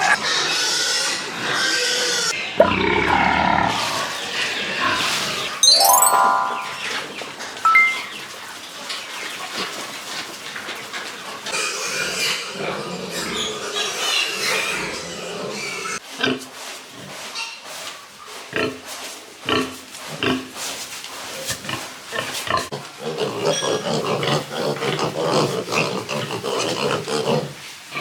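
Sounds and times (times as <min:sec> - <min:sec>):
short high chime: 0:05.6 - 0:07.0, 0:07.7 - 0:08.2
pigs grunting: 0:22.5 - 0:27.6.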